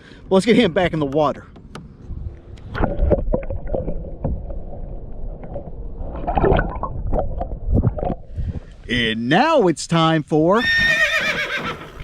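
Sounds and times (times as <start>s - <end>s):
water sloshing: 2.2s - 8.9s
wind buffeting microphone: 6.5s - 9.2s.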